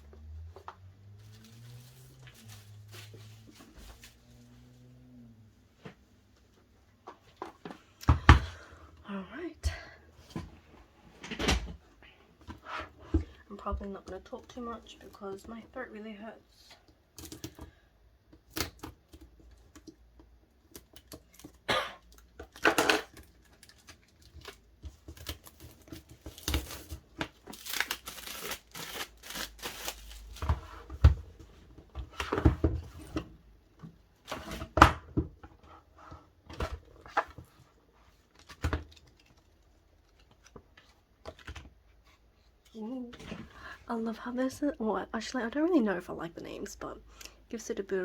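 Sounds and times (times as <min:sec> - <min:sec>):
paper and plastic crinkling: 0:01.1 - 0:04.5, 0:22.4 - 0:30.8, 0:38.1 - 0:41.7
paper tearing: 0:27.5 - 0:30.3.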